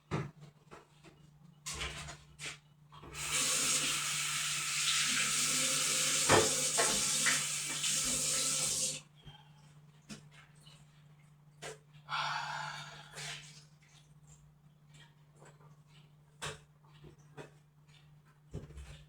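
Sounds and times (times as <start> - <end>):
tap water running into sink: 3.1 - 9.0.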